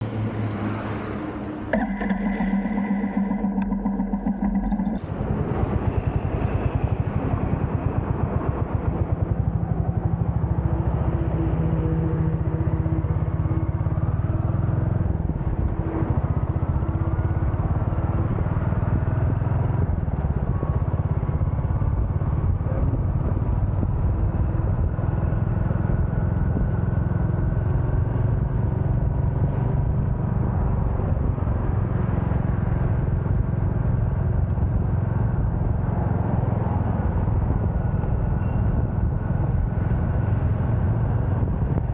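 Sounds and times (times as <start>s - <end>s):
motorcycle engine running: 1.8s - 5.1s.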